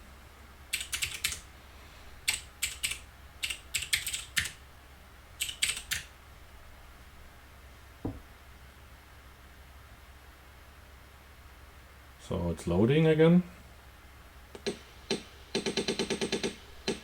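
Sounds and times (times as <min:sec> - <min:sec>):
typing on computer keyboard: 0:00.7 - 0:01.4, 0:02.3 - 0:04.6, 0:05.4 - 0:06.1, 0:14.6 - 0:17.0.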